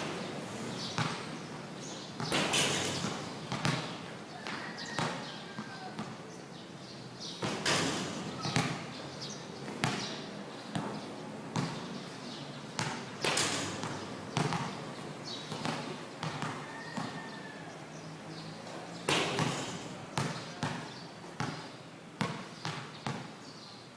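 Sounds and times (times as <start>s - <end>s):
basketball bouncing on hard court: 0.0s - 1.5s, 2.2s - 6.2s, 7.4s - 9.0s, 9.6s - 12.1s, 12.7s - 17.4s, 19.1s - 23.3s.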